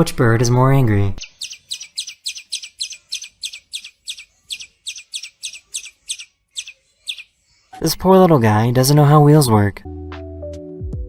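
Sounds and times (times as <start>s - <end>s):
bird chirping rapidly: 1.2s - 7.4s.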